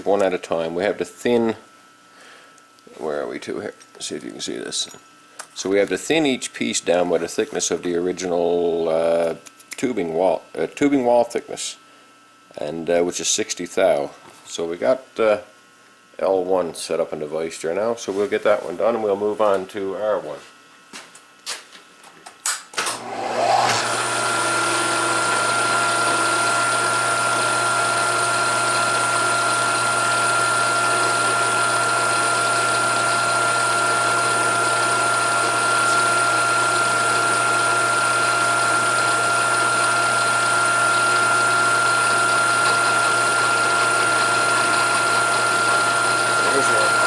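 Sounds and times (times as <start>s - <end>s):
milling machine spindle whine: 22.9s - 47.0s.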